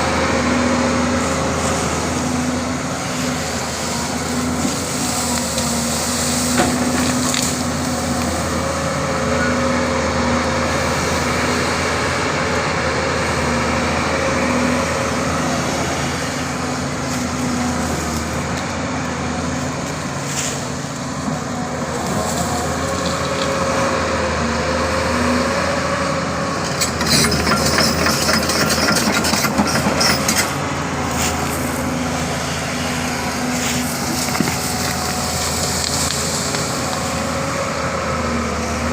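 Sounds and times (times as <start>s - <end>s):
excavator diesel engine running: 0.0s - 38.9s
branches cracking and snapping: 6.7s - 7.6s, 33.6s - 37.0s.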